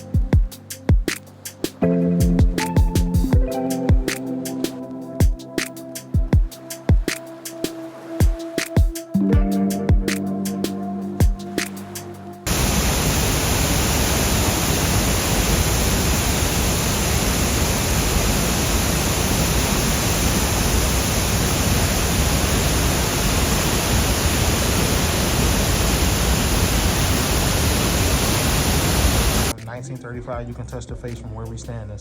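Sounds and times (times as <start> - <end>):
background music: 0.0 - 12.5, 29.5 - 32.0
waterfall roaring: 12.5 - 29.5.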